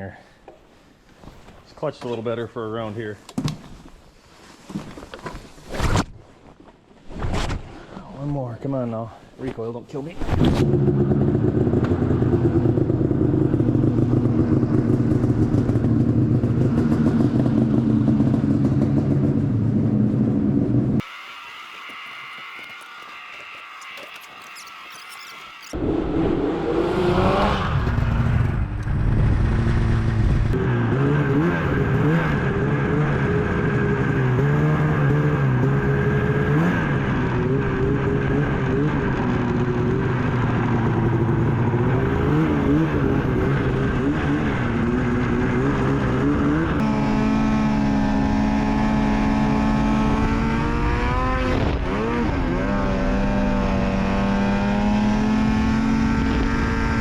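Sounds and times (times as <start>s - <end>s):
snowmobile engine revving: 30.5s - 57.0s.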